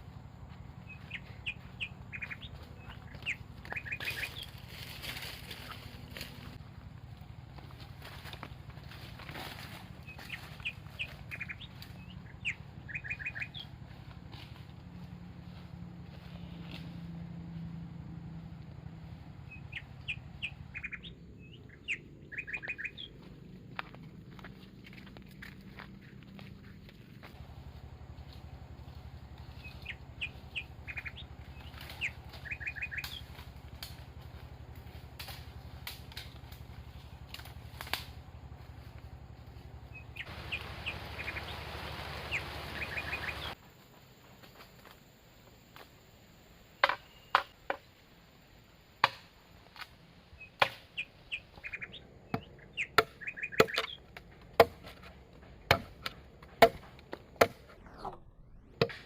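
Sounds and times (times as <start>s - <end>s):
steady low hum: 0.0s - 46.8s
bird chirps: 0.8s - 4.8s, 10.0s - 13.8s, 19.4s - 23.4s, 28.3s - 33.4s, 39.8s - 43.6s, 46.8s - 47.6s, 50.4s - 54.2s, 57.8s - 58.8s
bamboo chopping strikes: 46.8s - 47.9s, 49.0s - 49.9s, 50.6s - 51.0s, 52.3s - 57.8s, 58.8s - 59.0s.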